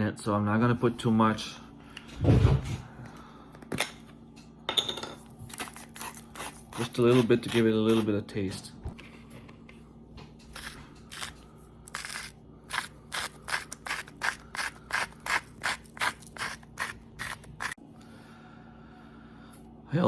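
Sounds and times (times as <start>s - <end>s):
spice jar rasping: 5.5s - 8.0s, 10.5s - 17.8s.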